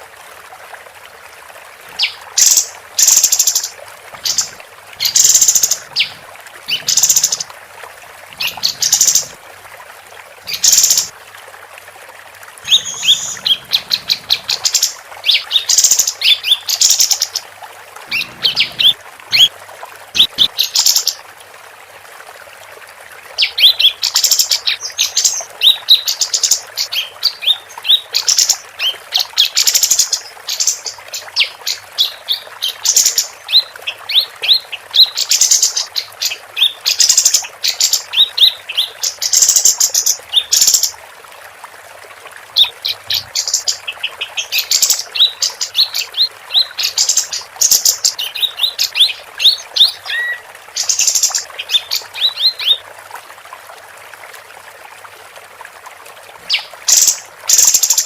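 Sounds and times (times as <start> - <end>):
bulbul singing high chirps: 12.7 - 13.5.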